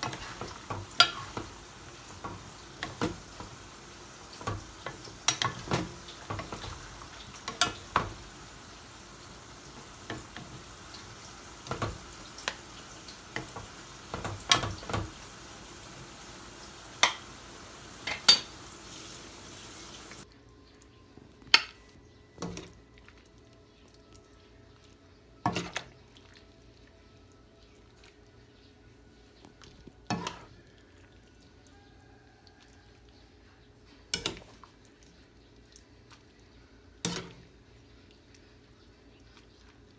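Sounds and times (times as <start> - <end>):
metal clanking on pan: 0.0 - 15.3, 16.9 - 17.4, 18.0 - 18.8, 30.1 - 30.5, 34.2 - 34.5, 37.0 - 37.4
utensils and dishes clanking: 0.0 - 15.3, 18.0 - 19.1
food sizzling in a pan: 0.0 - 20.3, 30.1 - 30.7, 37.0 - 37.6
utensil stirring food: 0.0 - 20.3, 29.6 - 31.2.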